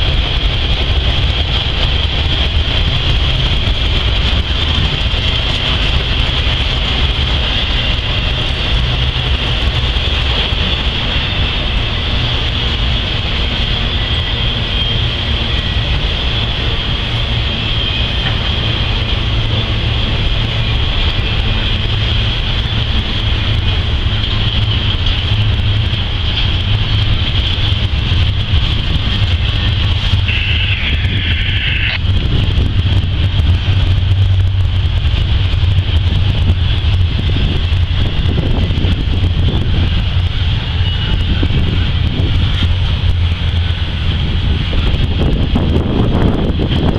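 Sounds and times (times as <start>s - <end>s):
freight train rumbling past: 0.0s - 46.9s
high whine: 28.7s - 35.0s
high squeal: 30.2s - 32.0s.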